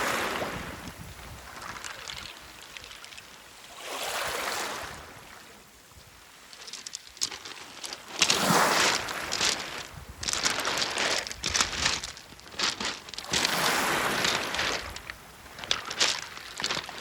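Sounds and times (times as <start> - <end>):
waves washing on pebble beach: 0.0 - 17.0
pebbles clattering: 1.5 - 3.4, 6.4 - 17.0.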